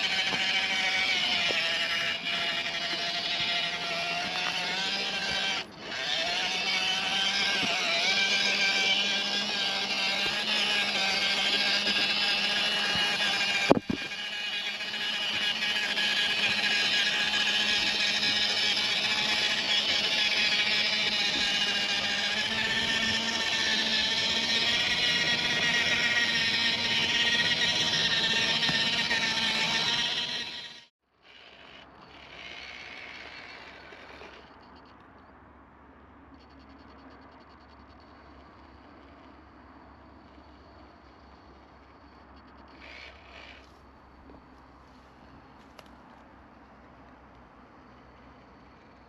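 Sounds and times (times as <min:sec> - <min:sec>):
electric motor whining: 0:00.0 - 0:34.4.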